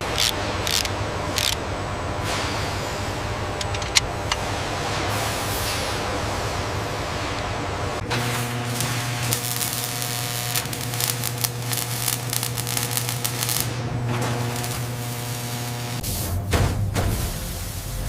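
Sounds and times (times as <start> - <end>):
machine hissing: 0.0 - 1.6, 8.1 - 16.4
rapid mechanical clicking: 0.0 - 1.6
machinery low hum: 0.0 - 18.0.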